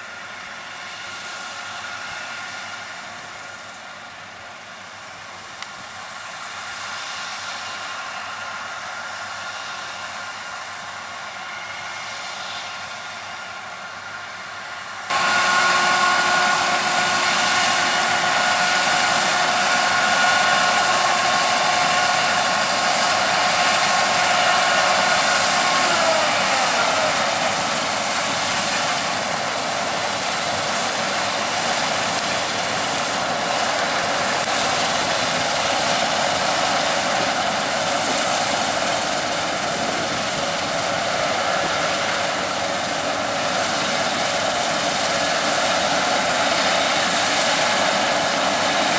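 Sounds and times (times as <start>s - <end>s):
high mechanical whine: 15.1s - 45.9s
harvest machinery running: 15.1s - 48.9s.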